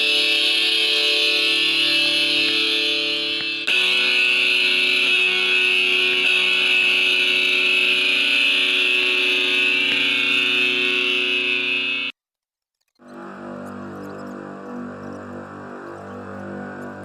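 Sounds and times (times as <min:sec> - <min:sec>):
sustained instrumental chords: 0:00.0 - 0:12.1.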